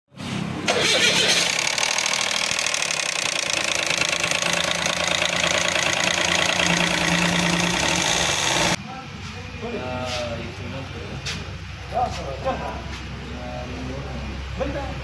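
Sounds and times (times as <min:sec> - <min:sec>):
car engine idling: 0:00.7 - 0:08.8
fast ticking rattle: 0:00.7 - 0:08.8.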